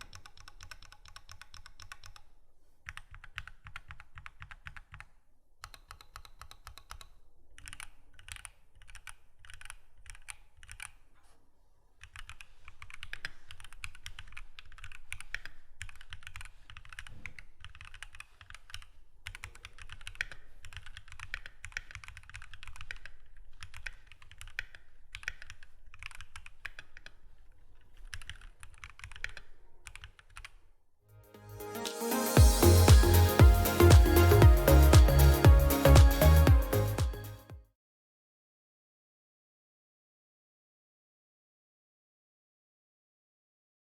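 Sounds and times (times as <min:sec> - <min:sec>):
mechanical keyboard typing: 0:00.0 - 0:02.2, 0:02.9 - 0:10.9, 0:12.1 - 0:27.2, 0:28.0 - 0:30.6
electronic music: 0:31.2 - 0:37.6.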